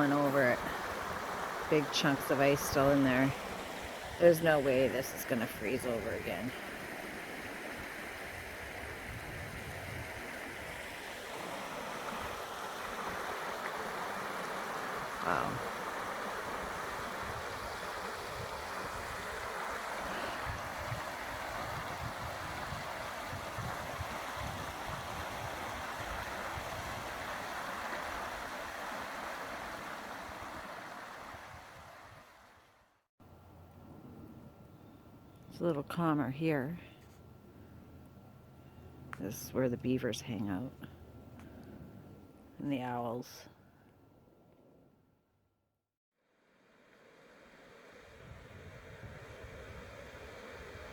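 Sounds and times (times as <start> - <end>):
creek rushing over a dam: 0.0 - 32.7
wind buffeting microphone: 8.7 - 10.7, 20.1 - 27.3, 48.1 - 50.9.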